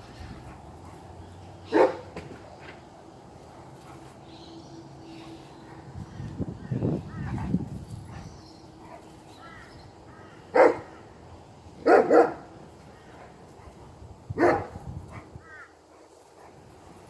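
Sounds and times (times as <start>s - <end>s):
puppy barking: 1.7s - 2.1s, 10.6s - 10.9s, 11.8s - 12.4s, 14.4s - 14.8s.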